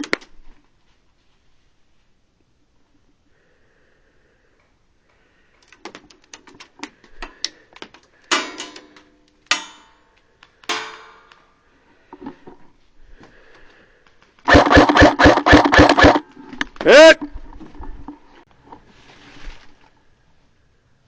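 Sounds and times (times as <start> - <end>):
loud sharp cracks with echo: 14.5 - 16.2.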